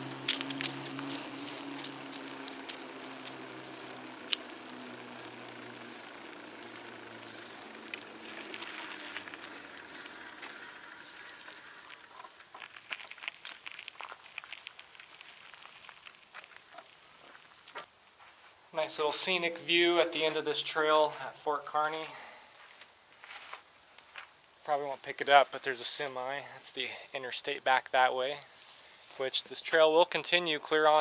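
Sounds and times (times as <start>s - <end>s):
bicycle tyres and drivetrain hum: 0.0s - 24.2s
sharp high-pitched squeaks: 3.5s - 4.3s, 7.2s - 8.0s.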